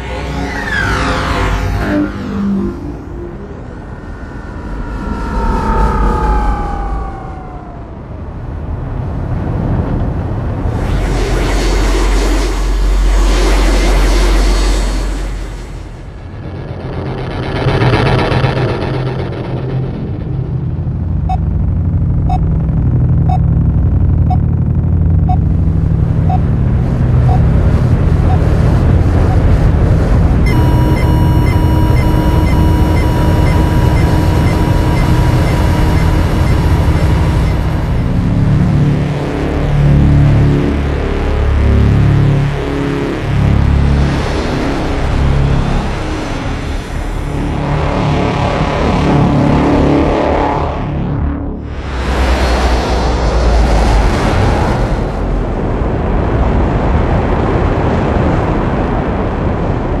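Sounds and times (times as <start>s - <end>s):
held electronic tone: 1.8s - 7.8s, 30.3s - 38.9s
deep engine rumble: 15.9s - 49.6s
short repeating beeps: 30.5s - 38.2s.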